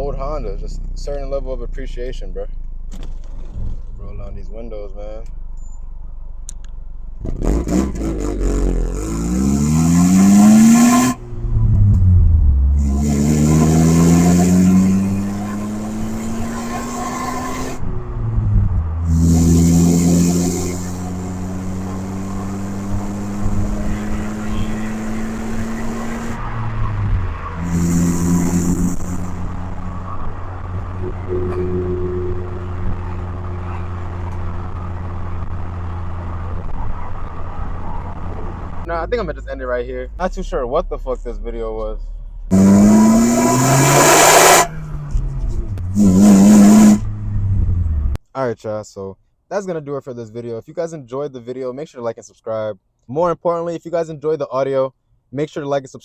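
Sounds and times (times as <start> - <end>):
car engine pulling in gear: 2.0 - 38.9, 41.8 - 48.2.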